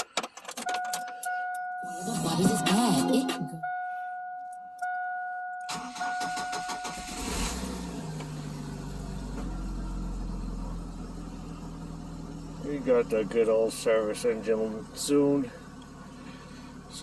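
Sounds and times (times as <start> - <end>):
dashboard warning chime: 0.6 - 7.4
starter motor cranking: 5.7 - 8.4
car engine idling: 5.7 - 17.0.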